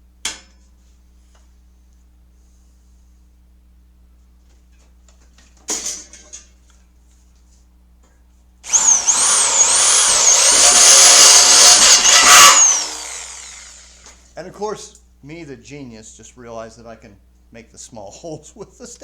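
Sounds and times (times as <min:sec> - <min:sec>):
power drill drilling metal: 0:08.6 - 0:14.2.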